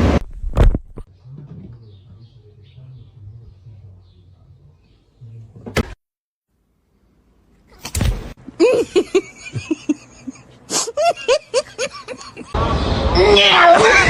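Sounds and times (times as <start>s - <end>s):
rustle or thump: 7.8s - 8.4s.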